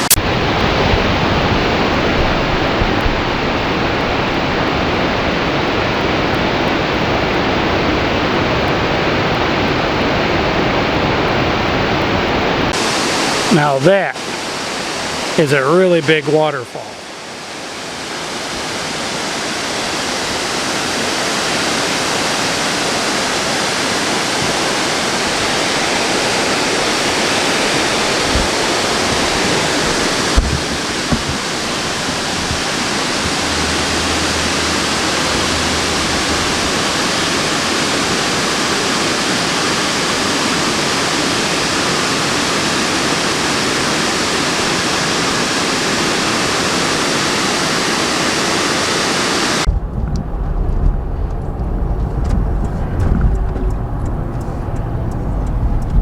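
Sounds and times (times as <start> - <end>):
waterfall rushing: 0.0 - 49.7
low thumps: 28.2 - 36.7, 49.7 - 56.0.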